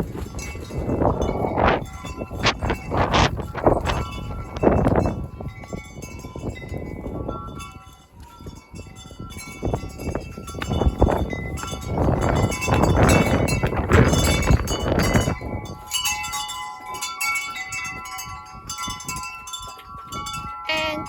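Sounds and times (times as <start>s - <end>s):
chimes ringing: 15.2s - 21.0s.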